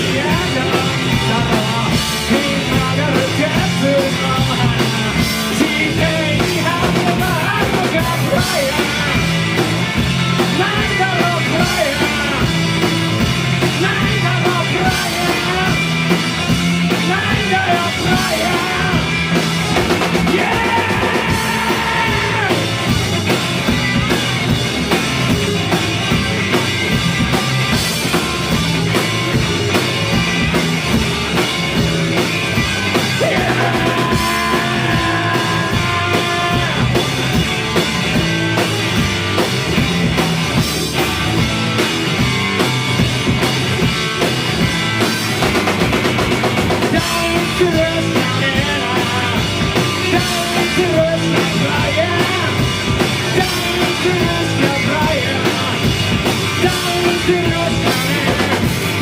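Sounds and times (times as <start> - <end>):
bass guitar: 0.0 - 59.0
drum kit: 0.0 - 59.0
electric guitars: 0.0 - 59.0.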